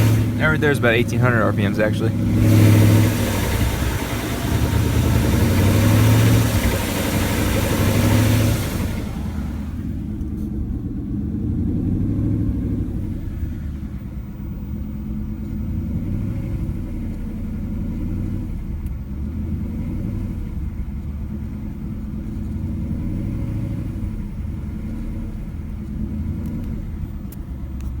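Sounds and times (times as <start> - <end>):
engine knocking: 0.0 - 19.7
car engine running at low revs: 0.0 - 28.0.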